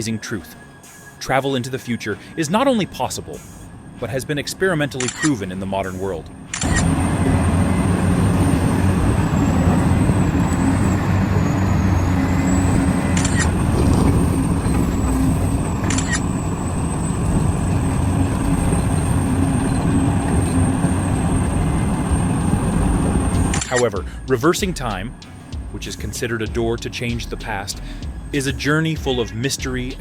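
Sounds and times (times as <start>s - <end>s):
high whine: 0.0s - 29.1s
diesel engine droning: 0.0s - 30.0s
brief clicks: 23.5s - 23.9s.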